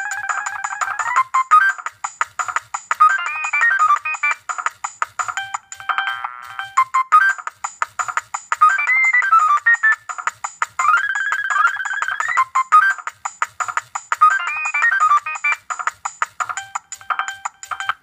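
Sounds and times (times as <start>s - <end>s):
mobile phone ringtone melody: 0.0s - 1.9s, 3.0s - 4.4s, 5.4s - 7.5s, 8.6s - 10.2s, 10.8s - 13.1s, 14.2s - 15.7s, 16.5s - 18.0s.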